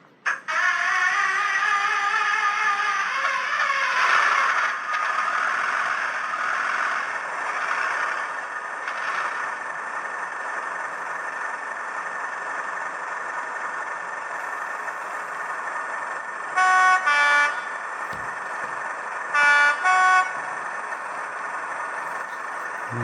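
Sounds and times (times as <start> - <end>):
model diesel engine running: 4.9 - 23.0
two-tone horn: 16.6 - 18.7, 19.3 - 21.3.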